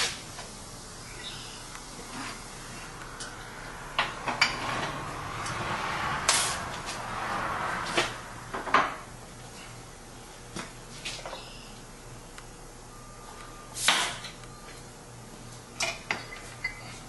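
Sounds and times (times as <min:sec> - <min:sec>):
rushing noise: 0:02.4 - 0:08.6.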